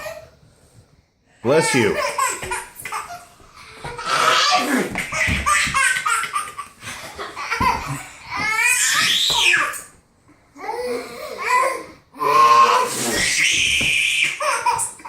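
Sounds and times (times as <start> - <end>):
young children giggling: 4.0 - 8.2.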